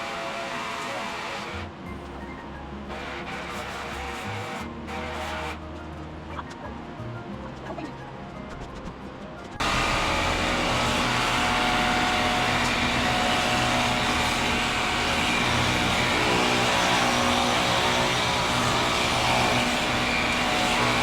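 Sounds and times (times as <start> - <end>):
pressure washer motor whine: 0.0 - 1.8, 9.6 - 21.0.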